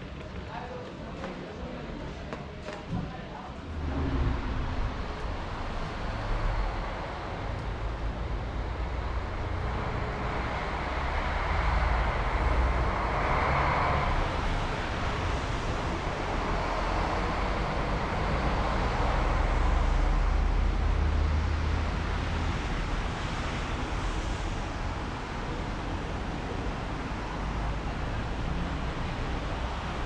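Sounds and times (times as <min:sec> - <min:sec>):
street traffic: 0:00.0 - 0:30.0
vehicle passing on wet road: 0:03.6 - 0:25.1.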